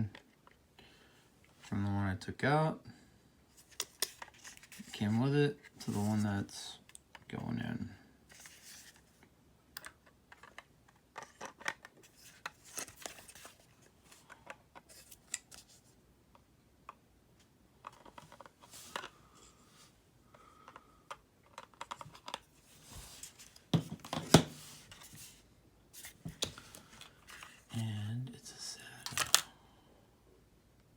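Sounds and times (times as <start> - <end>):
small clicks and scrapes: 20.6 - 23.7.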